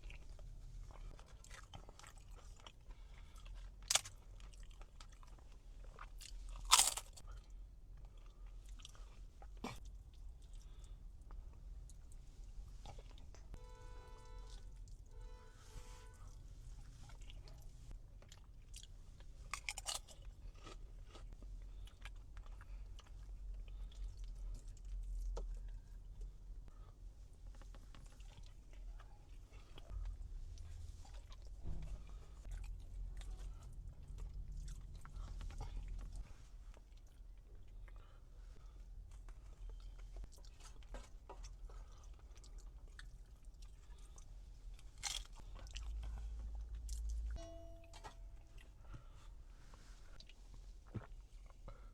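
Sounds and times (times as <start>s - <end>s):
person chewing crunchy food: 0.0s - 11.0s, 17.0s - 25.8s, 27.5s - 47.2s.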